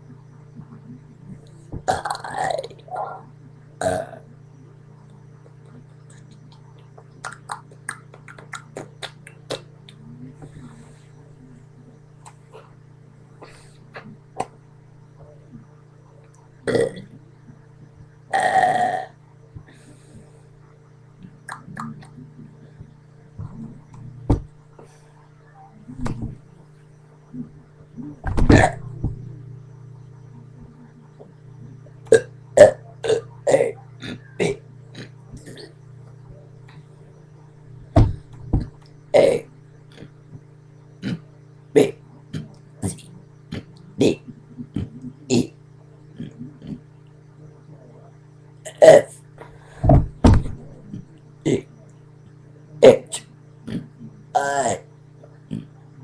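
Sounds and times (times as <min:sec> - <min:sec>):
steady low hum: 0:00.0 - 0:56.0
person burping loudly: 0:01.8 - 0:02.9, 0:03.8 - 0:04.2, 0:16.7 - 0:17.1, 0:18.3 - 0:19.1, 0:28.5 - 0:28.9, 0:32.1 - 0:35.8, 0:39.1 - 0:39.5, 0:43.6 - 0:45.6, 0:48.7 - 0:49.2, 0:53.1 - 0:54.9
short thumps: 0:49.8 - 0:50.7.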